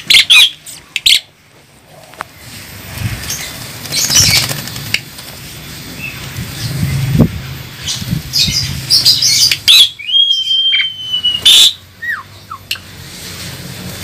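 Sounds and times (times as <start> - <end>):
starlings chattering squawks: 0.0 - 1.3, 3.1 - 12.9
long drawn-out bird whistle: 9.0 - 12.6.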